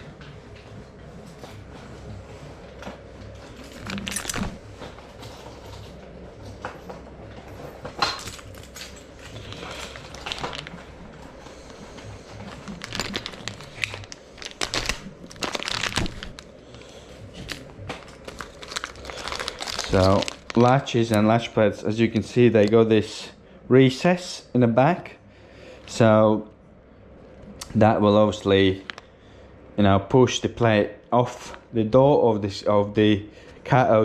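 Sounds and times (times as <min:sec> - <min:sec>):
packaging rustling and crinkling: 0:03.5 - 0:05.7, 0:08.2 - 0:21.6, 0:28.7 - 0:29.1.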